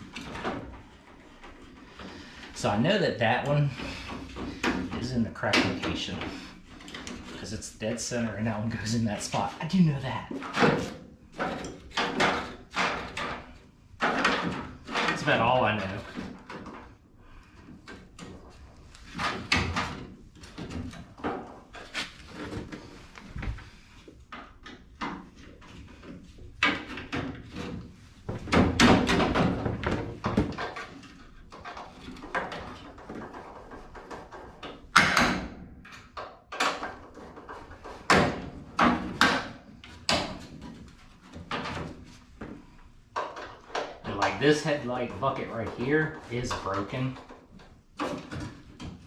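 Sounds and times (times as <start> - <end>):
metal knocks and rattles: 8.2 - 49.0.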